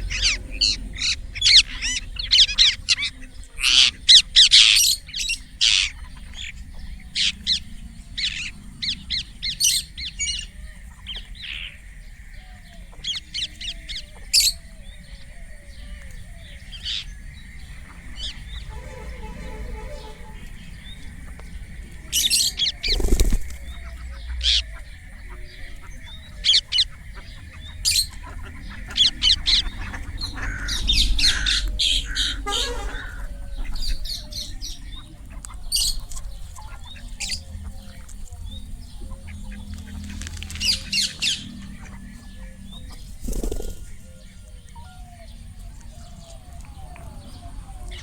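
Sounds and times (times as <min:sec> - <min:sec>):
parakeet squawking: 0:18.2 - 0:20.5.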